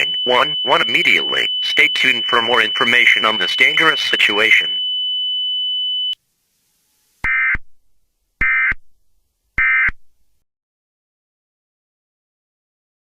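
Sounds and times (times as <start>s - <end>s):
steady high-pitched tone: 0.0s - 4.8s.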